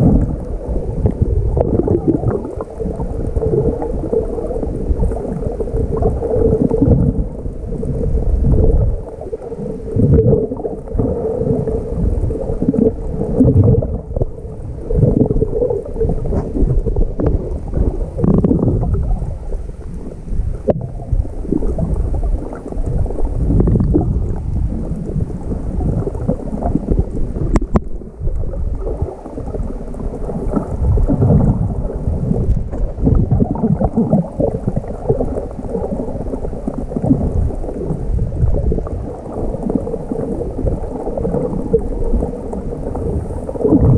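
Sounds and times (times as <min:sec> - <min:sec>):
muffled water sloshing underwater: 0:00.0 - 0:43.9.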